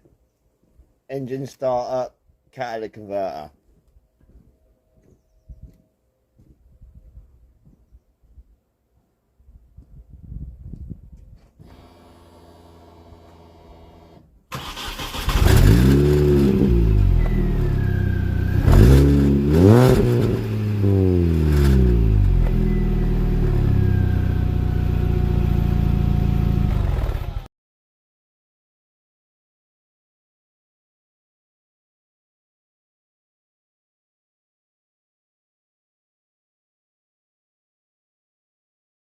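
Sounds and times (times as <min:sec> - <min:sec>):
car engine revving and idling: 0:11.7 - 0:14.2, 0:15.1 - 0:27.5.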